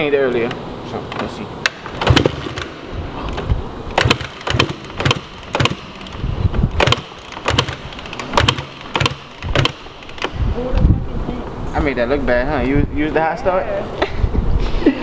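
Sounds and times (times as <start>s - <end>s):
dirt bike engine failing to start: 1.8s - 10.4s.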